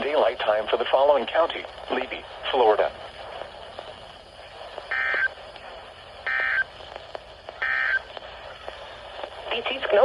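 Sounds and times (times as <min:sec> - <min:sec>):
faint radio hiss: 0:00.0 - 0:10.0
buzzy digital tone bursts: 0:06.2 - 0:06.7.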